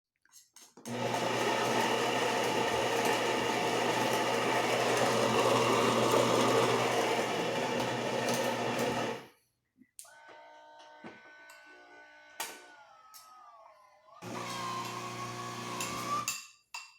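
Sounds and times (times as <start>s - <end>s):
coffee machine buzzing: 0.9s - 9.3s, 14.2s - 16.3s.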